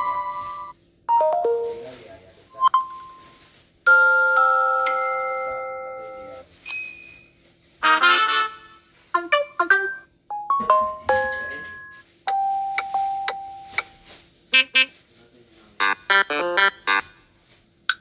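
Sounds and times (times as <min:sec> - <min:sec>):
phone ringtones and notification chimes: 0:00.0 - 0:01.8, 0:02.6 - 0:03.3, 0:03.9 - 0:06.4, 0:09.3 - 0:14.0.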